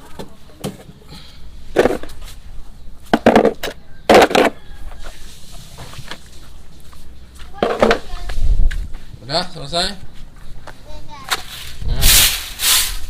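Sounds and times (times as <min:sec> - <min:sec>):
garden scoop scraping: 0:11.3 - 0:13.0.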